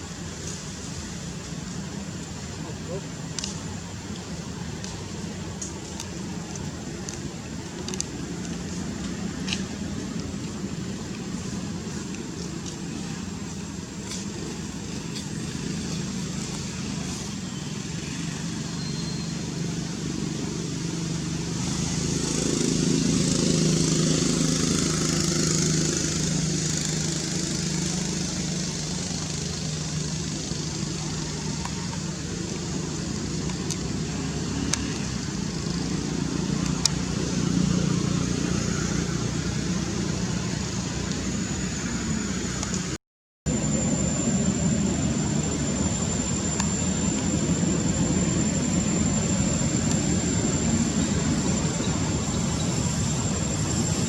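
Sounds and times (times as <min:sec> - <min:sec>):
motor engine running: 0:19.3 - 0:54.0.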